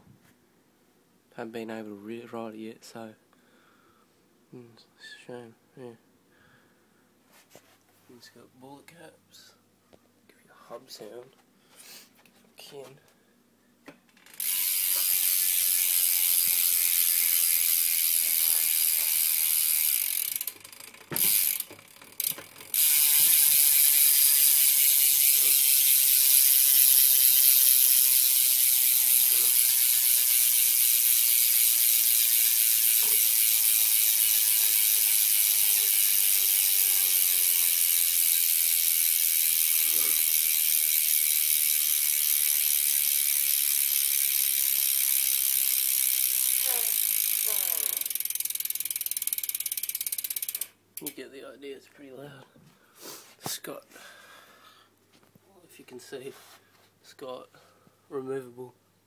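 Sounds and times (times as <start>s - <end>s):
bicycle hub ratcheting buzz: 14.0s - 51.2s.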